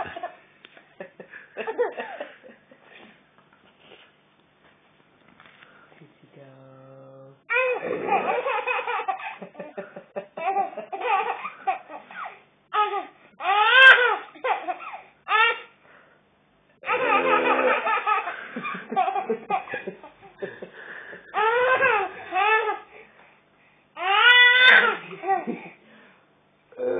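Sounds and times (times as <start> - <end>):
baby laughing: 0.0 - 0.4, 7.5 - 15.6, 16.8 - 20.4, 21.3 - 22.9, 24.0 - 25.7.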